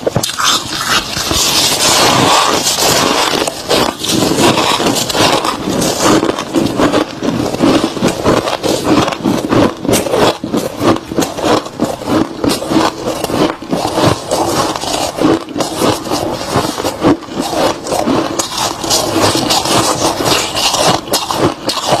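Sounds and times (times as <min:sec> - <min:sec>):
frost crunching being chewed: 0:00.0 - 0:22.0.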